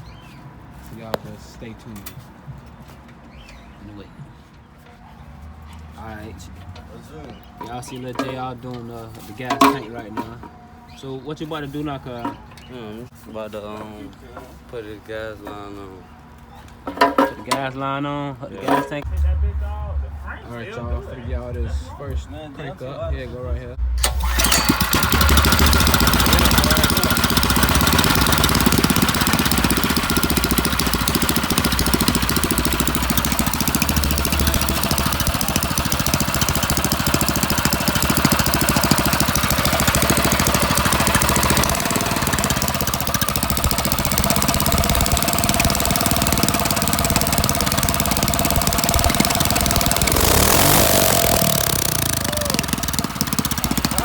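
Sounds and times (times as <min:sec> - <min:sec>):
small go-kart engine running: 0:24.0 - 0:54.0.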